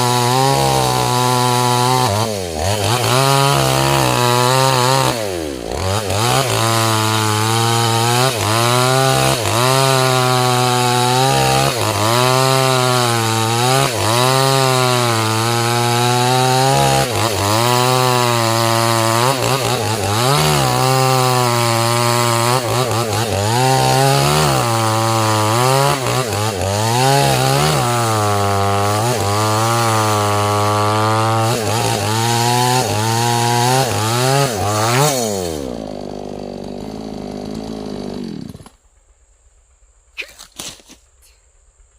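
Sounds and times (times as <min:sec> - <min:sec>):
chainsaw cutting wood: 0:00.0 - 0:39.1, 0:40.2 - 0:41.4.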